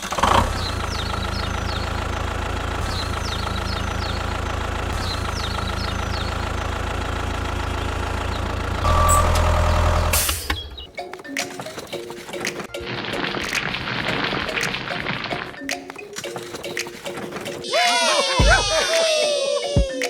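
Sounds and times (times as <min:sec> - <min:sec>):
vehicle engine running: 0:00.0 - 0:10.5.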